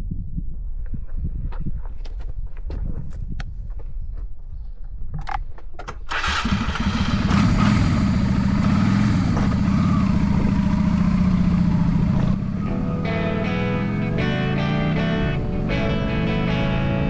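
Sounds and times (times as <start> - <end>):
motorcycle engine starting and running: 6.0 - 17.0.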